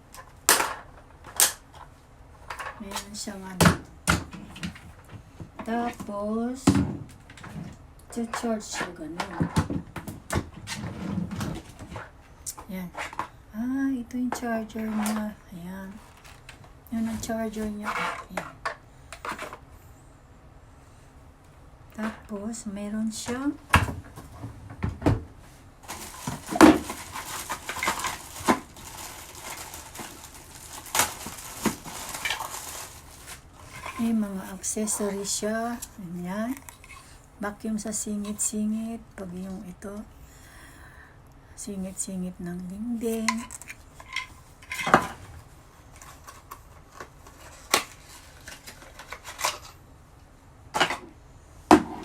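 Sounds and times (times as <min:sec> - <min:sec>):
plastic parts knocking down: 0:00.2 - 0:01.9, 0:25.9 - 0:34.0
packaging crinkling and rustling: 0:25.8 - 0:37.0, 0:43.1 - 0:49.8.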